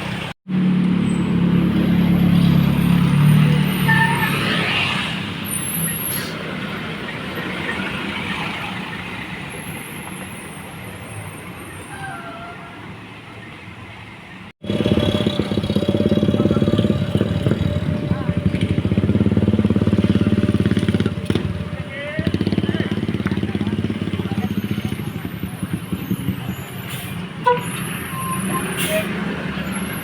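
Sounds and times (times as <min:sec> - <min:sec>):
bus driving past: 0:00.0 - 0:30.0
vehicle engine running with rattle: 0:14.6 - 0:26.8.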